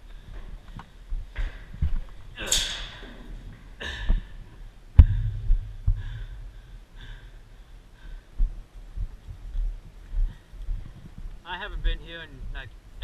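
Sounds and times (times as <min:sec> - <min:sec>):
muffled low thumps: 0:00.3 - 0:02.4, 0:03.4 - 0:06.8, 0:08.4 - 0:12.9
person breathing: 0:03.8 - 0:08.7, 0:10.1 - 0:11.0.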